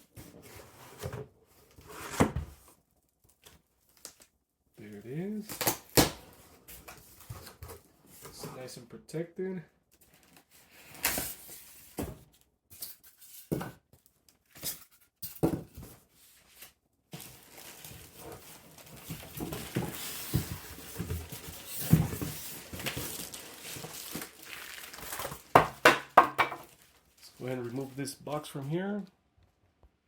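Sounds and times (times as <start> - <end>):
cardboard box rustling and knocking: 18.1 - 26.8.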